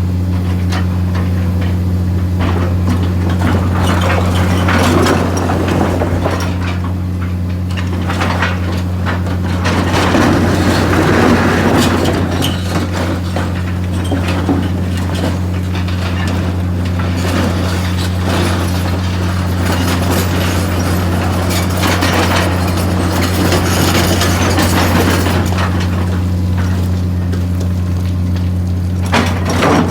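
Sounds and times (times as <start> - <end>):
mechanical clanking and rattling: 0.3 - 29.9.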